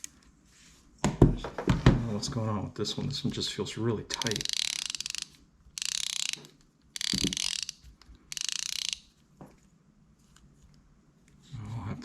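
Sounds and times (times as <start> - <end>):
fishing reel drag clicking: 4.1 - 9.1.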